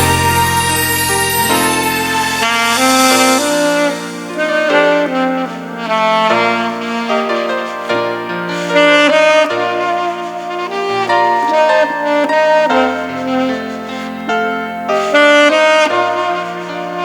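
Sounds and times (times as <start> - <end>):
bass line: 0.0 - 3.4
saxophone melody: 0.0 - 17.0.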